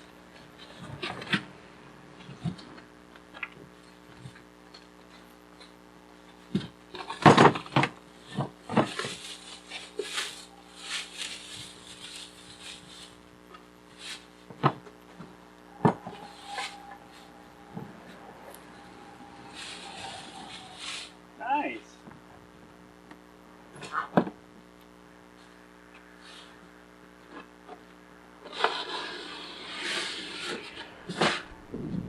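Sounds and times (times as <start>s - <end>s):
faint steady hum: 0.0s - 32.0s
cardboard rustling and scraping: 6.9s - 21.2s.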